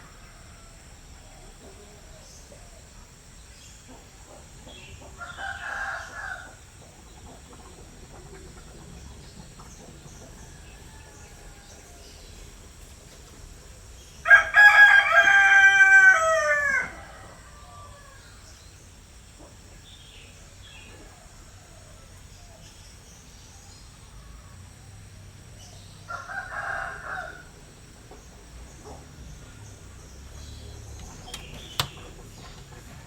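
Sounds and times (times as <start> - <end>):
rooster crowing: 0.0 - 1.1, 5.2 - 6.6, 10.3 - 12.4, 14.2 - 18.4, 26.1 - 27.6.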